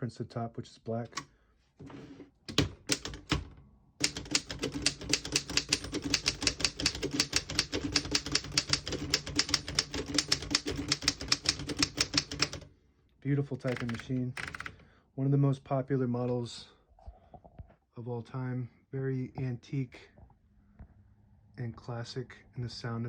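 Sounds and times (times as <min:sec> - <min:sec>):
typewriter keystrokes: 0:02.5 - 0:12.6.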